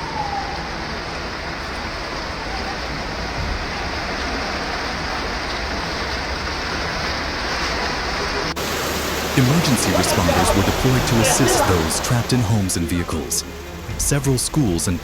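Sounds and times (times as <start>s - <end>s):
siren: 0.0s - 1.0s
torrential rain and rushing water: 0.0s - 15.0s.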